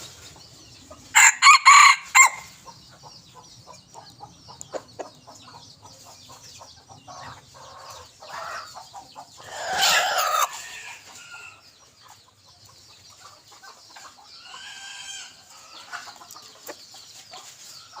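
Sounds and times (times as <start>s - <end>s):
chicken clucking: 0.0s - 18.0s
rooster crowing: 1.2s - 2.5s.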